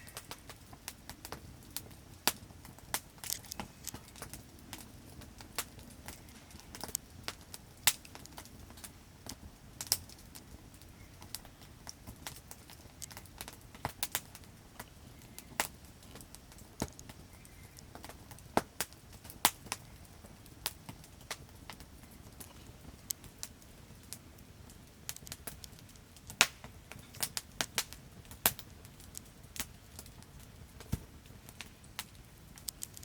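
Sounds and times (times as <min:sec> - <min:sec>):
campfire crackling: 0:00.0 - 0:33.0
wood popping and snapping: 0:02.2 - 0:04.8.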